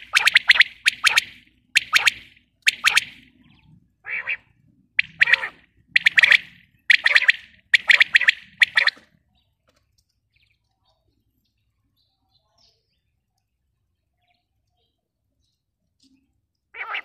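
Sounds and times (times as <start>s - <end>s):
quail calling: 0.0s - 3.4s, 4.0s - 9.1s, 16.8s - 17.0s.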